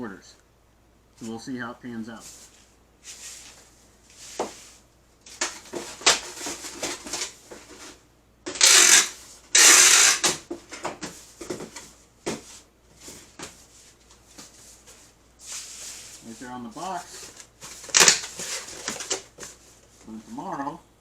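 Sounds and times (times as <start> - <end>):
cardboard boxes rustling: 2.2 - 8.0, 10.4 - 20.1
loud rasping bursts: 8.6 - 10.4.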